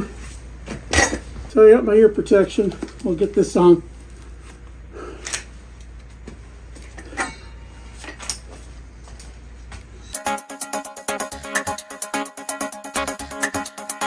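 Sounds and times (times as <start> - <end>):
steady low hum: 0.0 - 10.2
electronic dance music: 10.2 - 14.0.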